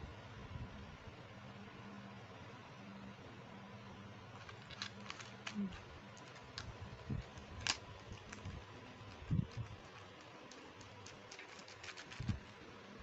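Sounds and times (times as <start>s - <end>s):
plastic toy pieces clicking: 4.4s - 12.6s.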